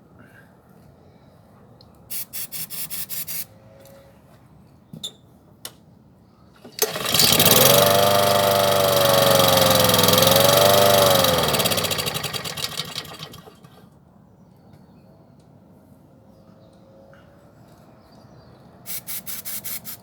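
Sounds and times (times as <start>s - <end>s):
short noises and clicks: 6.6s - 9.6s
lawnmower engine running: 6.7s - 13.8s.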